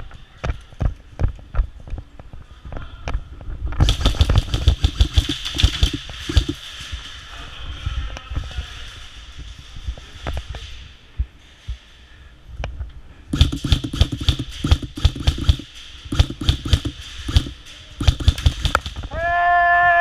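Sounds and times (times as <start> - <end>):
airsoft guns firing bursts: 3.8 - 6.6, 13.3 - 19.1.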